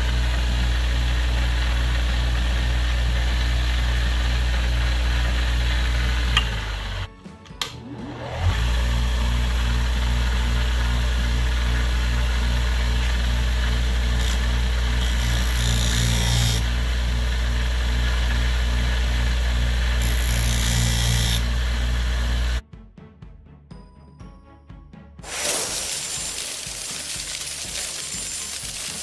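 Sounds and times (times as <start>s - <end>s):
sander motor humming: 0.0s - 22.6s
high hiss: 25.2s - 29.0s.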